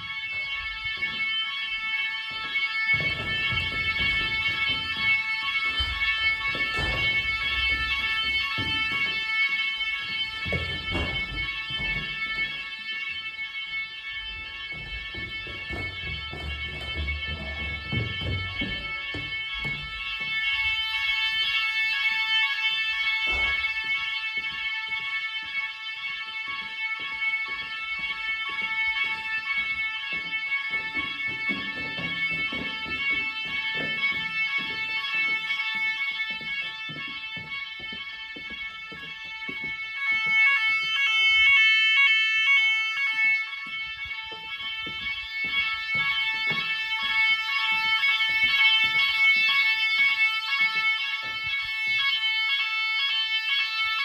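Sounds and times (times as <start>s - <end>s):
shrill fire alarm: 0.0s - 54.0s.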